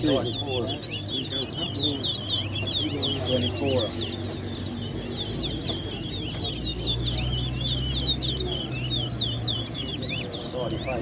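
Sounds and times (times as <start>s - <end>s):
finches whistling song: 0.0s - 11.0s.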